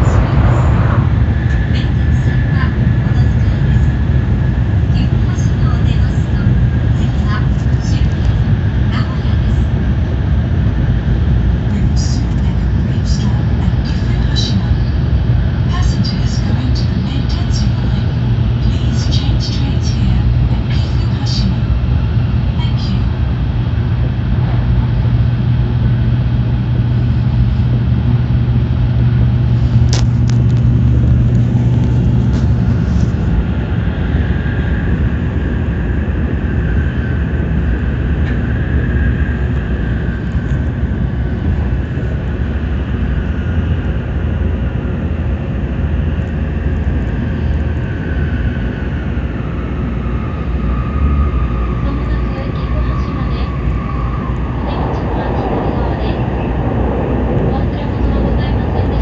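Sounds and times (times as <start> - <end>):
low hum: 0.0 - 59.0
train rumble and roar: 0.0 - 59.0
wavering whine: 0.0 - 59.0.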